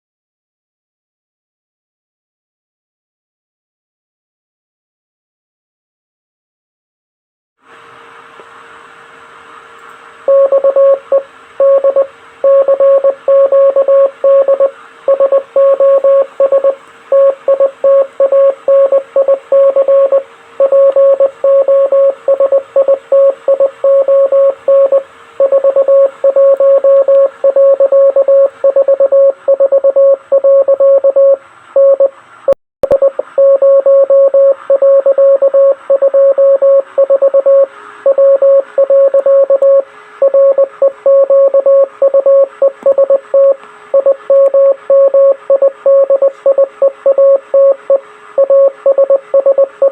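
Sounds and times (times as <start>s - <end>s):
morse code beeping tone: 10.3s - 32.1s, 32.8s - 49.9s.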